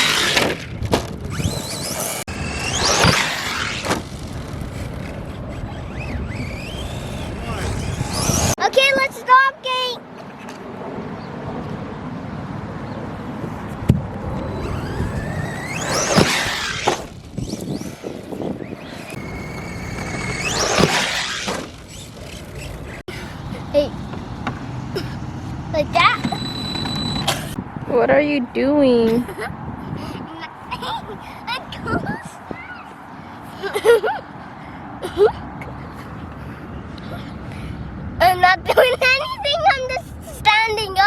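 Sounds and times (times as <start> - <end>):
electric motor whining: 0.0 - 8.6, 14.1 - 24.8, 26.2 - 27.6
steady noisy background: 0.0 - 10.1.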